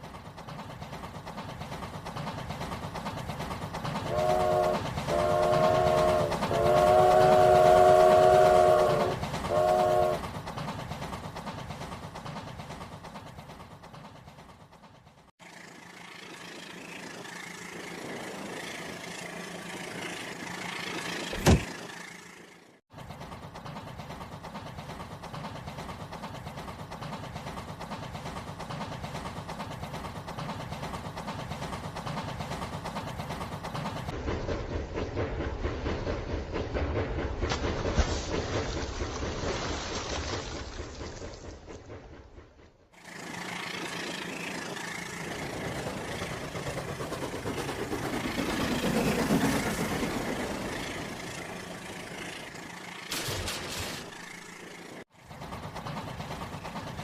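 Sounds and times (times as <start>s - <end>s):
train rumbling: 0.0s - 57.0s
train horn blasts: 4.1s - 10.2s.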